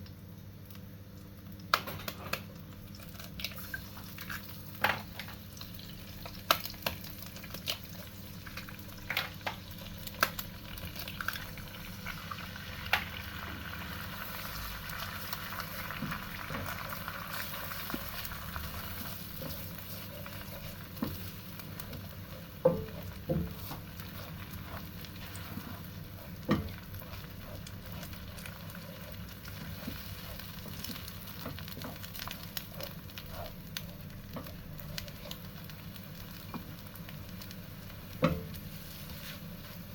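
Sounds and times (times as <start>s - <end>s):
food sizzling in a pan: 1.9s - 39.9s
utensil knocking against pan: 22.6s - 23.7s.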